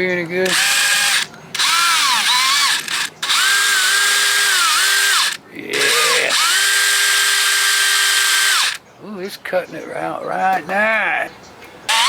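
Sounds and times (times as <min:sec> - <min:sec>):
electric drill whining: 0:00.5 - 0:08.8.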